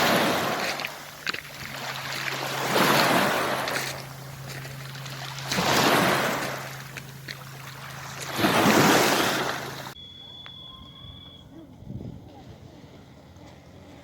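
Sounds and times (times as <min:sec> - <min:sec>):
sea waves breaking on shore: 0:00.0 - 0:10.0.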